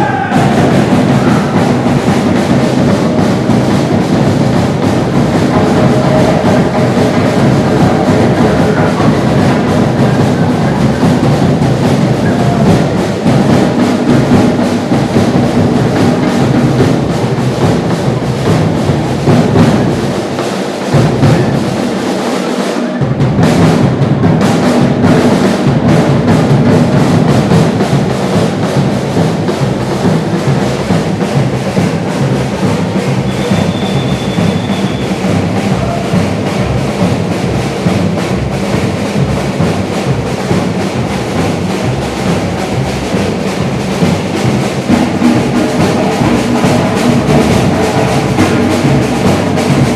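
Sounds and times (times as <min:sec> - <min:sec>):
deep drums: 0:00.0 - 0:49.9
samba percussion drumming: 0:00.0 - 0:49.9.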